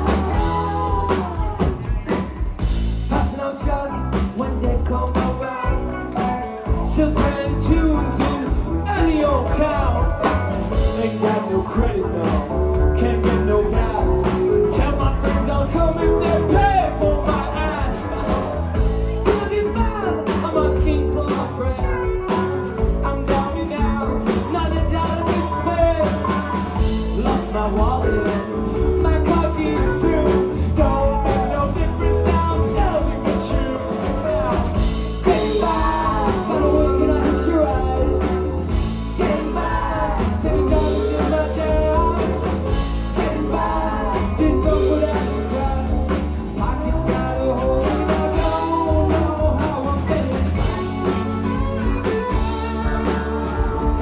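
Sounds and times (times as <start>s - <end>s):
live rock band playing: 0.0s - 54.0s
lead guitar line bending: 48.3s - 54.0s.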